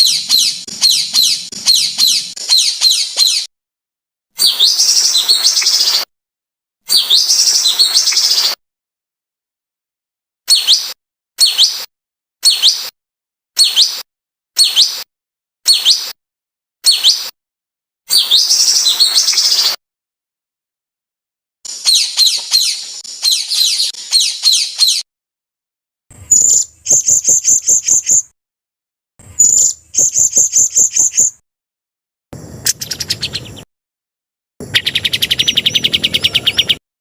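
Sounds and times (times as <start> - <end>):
high sweeping bird calls: 0.0 - 3.5, 4.4 - 6.1, 6.9 - 8.6, 10.5 - 12.9, 13.6 - 14.0, 14.6 - 15.0, 15.7 - 16.2, 16.8 - 17.3, 18.1 - 19.8, 21.7 - 25.1, 26.3 - 28.3, 29.2 - 31.4, 32.4 - 33.7, 34.6 - 36.8
sharp bird chattering: 0.0 - 3.5, 21.7 - 25.0, 26.3 - 28.3, 29.4 - 31.4, 32.6 - 33.7, 34.6 - 36.8
whistled bird notes: 0.0 - 3.5, 4.4 - 6.1, 6.9 - 8.6, 10.5 - 12.9, 13.6 - 15.1, 15.7 - 16.2, 16.8 - 17.4, 18.1 - 19.8, 21.7 - 25.1, 26.3 - 28.3, 29.4 - 31.4, 32.6 - 33.7, 34.6 - 36.8.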